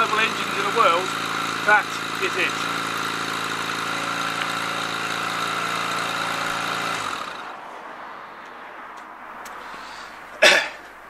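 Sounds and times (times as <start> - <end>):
motorcycle engine idling: 0.0 - 7.5.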